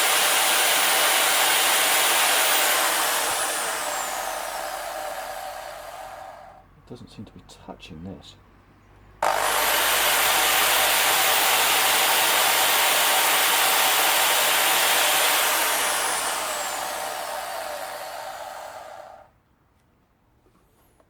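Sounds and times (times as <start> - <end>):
electric drill polishing metal: 0.0 - 6.3, 9.2 - 19.2.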